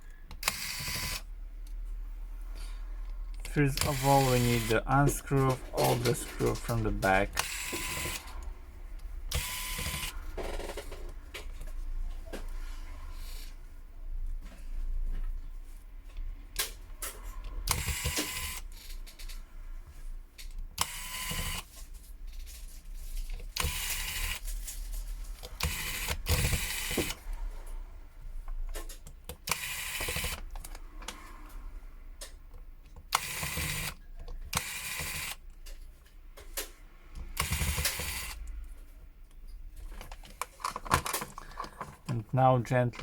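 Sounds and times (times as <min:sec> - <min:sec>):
electric screwdriver whirring: 0:00.4 - 0:01.3, 0:03.8 - 0:04.8, 0:05.8 - 0:08.3, 0:09.3 - 0:10.8, 0:17.7 - 0:18.6, 0:20.8 - 0:21.7, 0:23.6 - 0:24.4, 0:25.6 - 0:27.2, 0:29.4 - 0:30.5, 0:33.1 - 0:35.4, 0:37.4 - 0:38.4.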